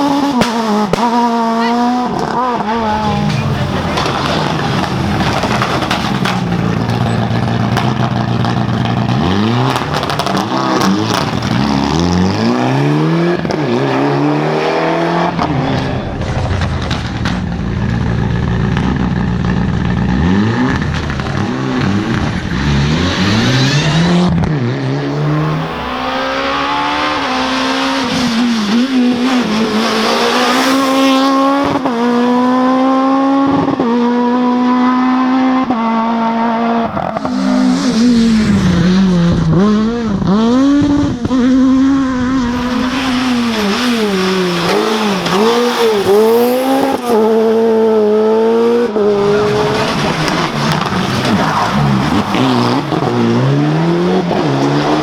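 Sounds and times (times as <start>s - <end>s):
rally car engines revving: 0.0s - 55.0s.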